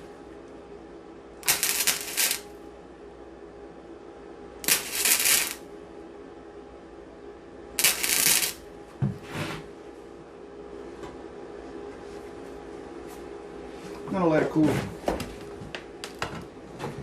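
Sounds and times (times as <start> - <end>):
steady background hum: 0.0 - 17.0
tack welds crackling: 1.4 - 2.4, 4.6 - 5.6, 7.8 - 8.6.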